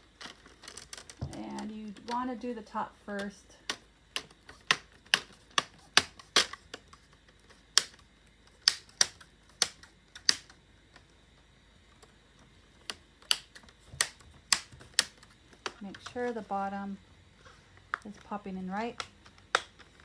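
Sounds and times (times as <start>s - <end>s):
plastic clips snapping: 3.2s - 10.6s, 12.8s - 16.4s, 18.9s - 20.0s.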